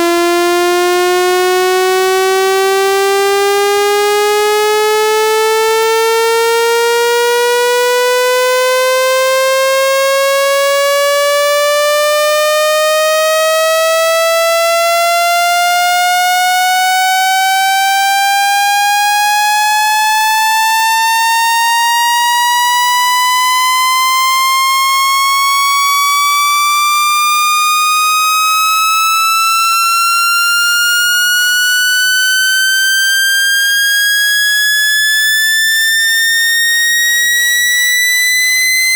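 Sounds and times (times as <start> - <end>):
buzzy tone rising in pitch: 29.6 - 38.9.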